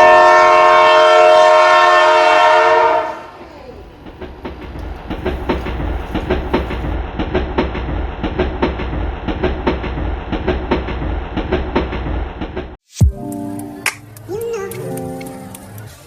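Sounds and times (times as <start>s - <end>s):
train rumble: 0.0s - 12.8s, 13.4s - 16.0s
train wheels clacking: 3.6s - 12.8s.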